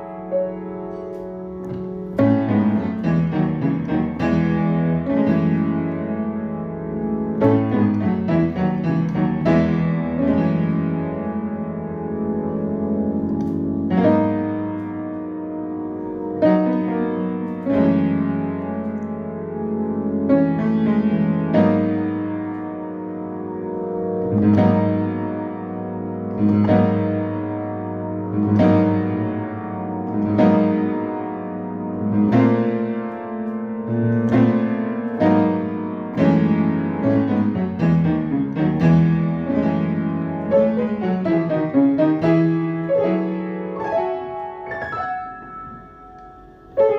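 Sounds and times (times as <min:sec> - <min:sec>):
solo piano music: 0:00.0 - 0:46.9.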